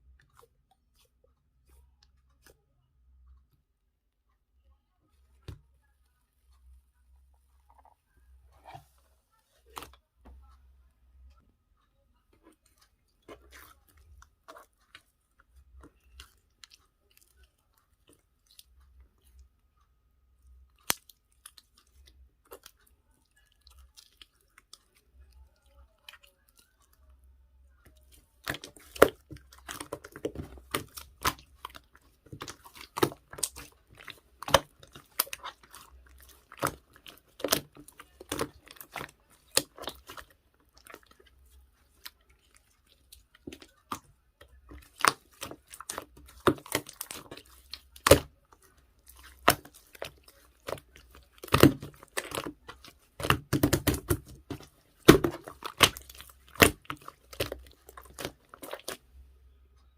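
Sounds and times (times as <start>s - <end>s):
slime squished by hand: 20.6s - 59.2s.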